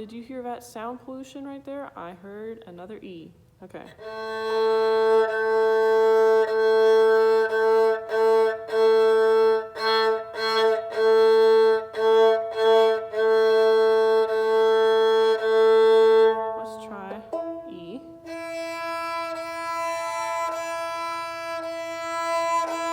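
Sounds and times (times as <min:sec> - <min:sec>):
bowed string on one note: 0:04.0 - 0:22.9.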